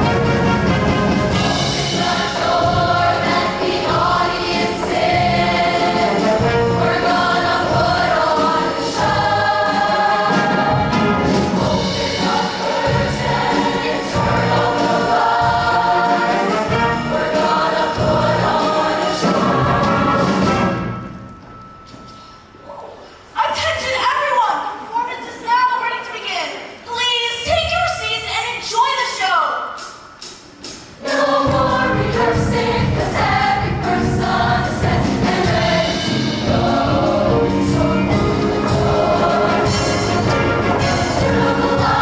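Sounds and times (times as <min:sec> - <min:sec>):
choir singing in harmony: 0:00.0 - 0:21.2, 0:31.0 - 0:42.0
instrumental accompaniment: 0:00.0 - 0:22.6, 0:30.2 - 0:42.0.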